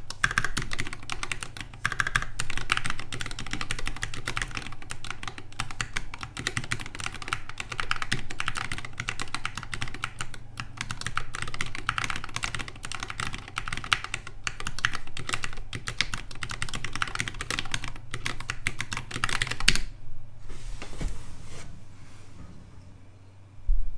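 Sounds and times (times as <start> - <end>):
fast typing on mechanical keyboard: 0.0 - 19.9
soft rustle: 20.4 - 23.0.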